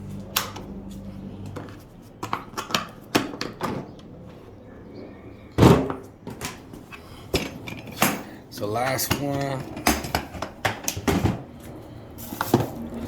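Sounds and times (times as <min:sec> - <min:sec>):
tools clicking and knocking: 0:09.0 - 0:11.4.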